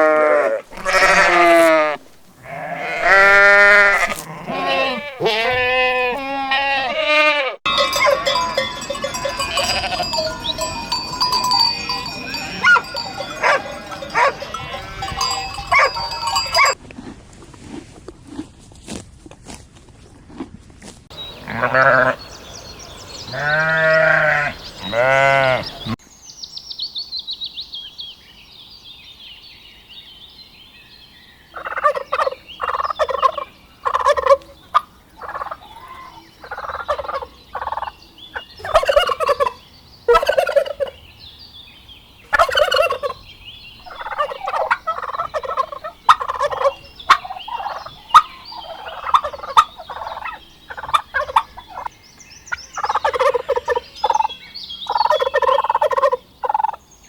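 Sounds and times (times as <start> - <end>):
farm animal bleats: 0.0 - 7.8, 9.4 - 10.3, 11.8 - 16.8, 21.4 - 22.2, 23.3 - 26.0
turkeys gobbling: 15.7 - 16.8, 31.6 - 37.9, 38.6 - 41.0, 42.3 - 43.2, 43.9 - 51.9, 52.8 - 54.3, 54.9 - 56.8.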